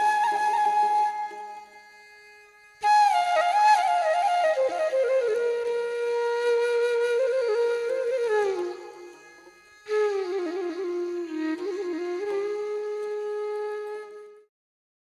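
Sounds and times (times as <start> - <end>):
flute music: 0.0 - 14.5.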